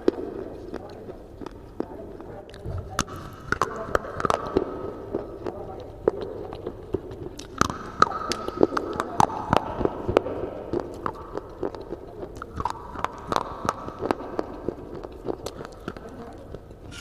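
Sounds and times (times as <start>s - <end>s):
crisp chewing crunches: 0.6s - 9.6s, 10.7s - 17.0s.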